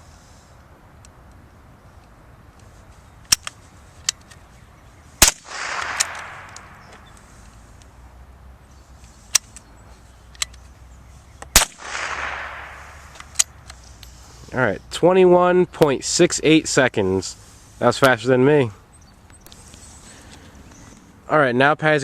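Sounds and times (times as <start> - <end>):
rifle shots: 5.2 - 6.9, 11.5 - 13.5
rifle bolt clicks: 5.2 - 7.0, 11.4 - 14.1.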